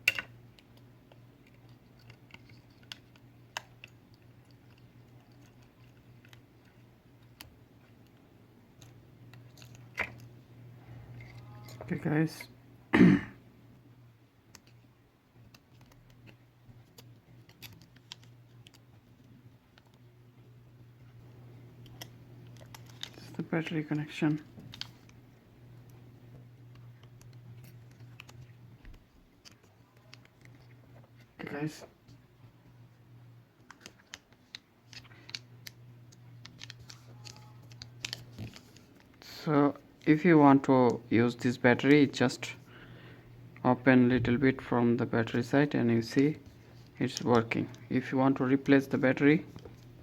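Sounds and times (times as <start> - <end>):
small tools clicking and tapping: 0.0 - 8.2
low steady hum: 0.0 - 50.0.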